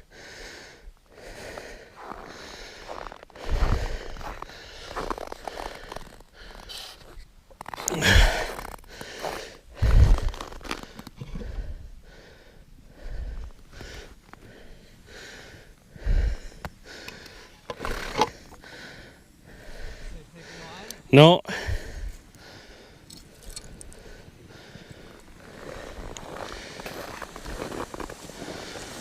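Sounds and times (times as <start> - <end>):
person breathing and sniffing: 0.0 - 7.2, 7.8 - 29.0
breath thumping against microphone: 8.0 - 11.8.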